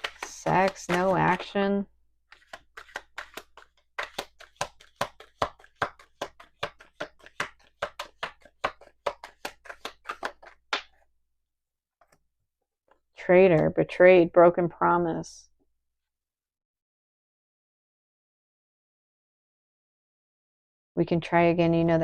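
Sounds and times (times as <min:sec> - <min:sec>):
cards clicking and tapping: 0:00.0 - 0:01.6, 0:02.3 - 0:11.0.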